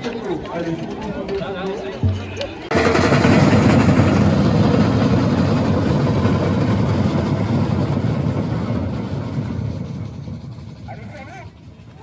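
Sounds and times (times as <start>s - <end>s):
drum ensemble playing: 2.0s - 4.4s.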